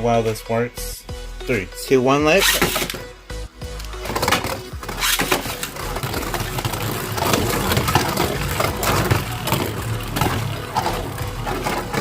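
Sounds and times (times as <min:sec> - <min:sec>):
spinning tops whirring and rattling: 0:04.4 - 0:12.0.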